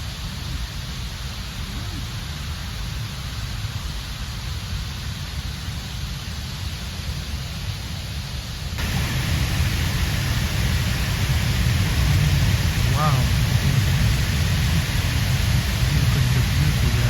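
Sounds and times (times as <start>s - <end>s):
waterfall rushing: 8.7s - 17.0s.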